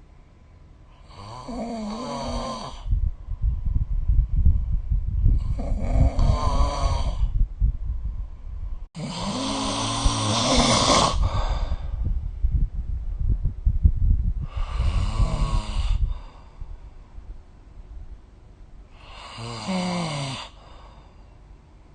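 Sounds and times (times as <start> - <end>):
person snoring loudly: 1.0 - 2.9, 5.4 - 7.3, 9.0 - 11.9, 14.4 - 16.3, 19.0 - 20.6
low pulsing flutter: 11.3 - 17.2.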